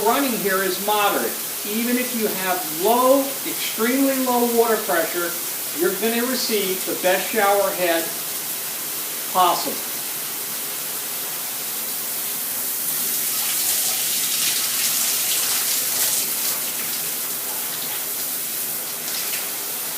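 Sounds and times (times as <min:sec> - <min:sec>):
shower head spraying water: 0:12.0 - 0:19.9.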